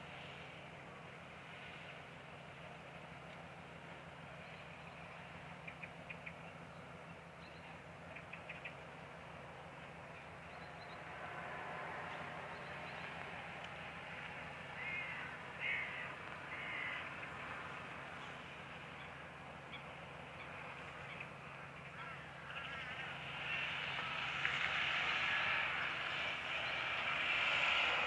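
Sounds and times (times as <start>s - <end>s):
outdoor noise: 0.0s - 28.0s
crows cawing: 14.8s - 17.1s.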